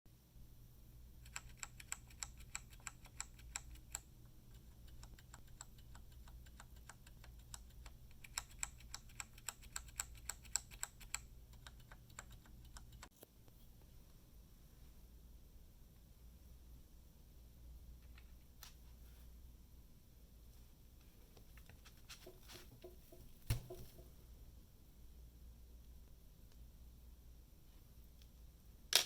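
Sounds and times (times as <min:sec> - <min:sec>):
mechanical keyboard typing: 0:01.2 - 0:13.1.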